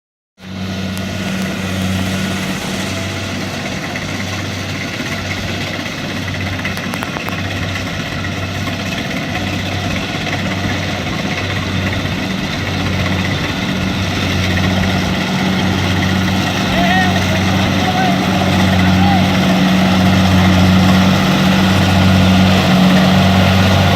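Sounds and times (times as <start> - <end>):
combine harvester engine droning: 0.4 - 23.9.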